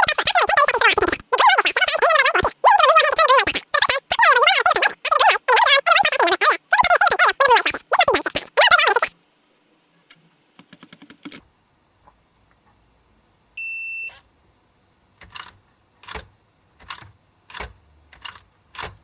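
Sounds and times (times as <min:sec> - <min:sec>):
electronic lock beeps: 0:00.0 - 0:09.7.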